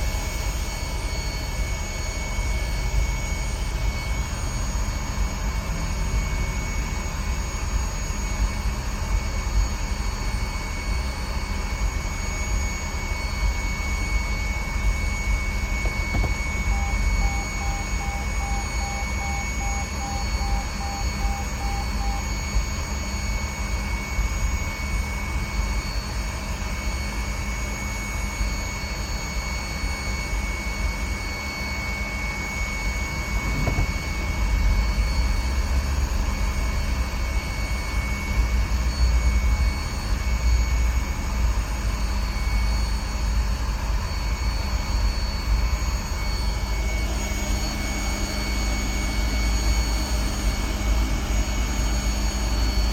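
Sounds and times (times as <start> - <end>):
engine rumbling with whine: 0.0 - 52.9.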